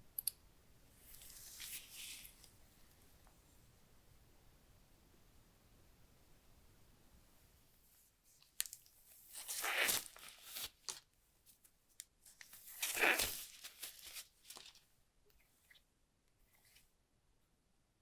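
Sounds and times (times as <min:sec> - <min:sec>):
small clicks and crinkles: 0:08.4 - 0:15.8
packaging ripping by hand: 0:08.6 - 0:11.0, 0:12.4 - 0:14.7.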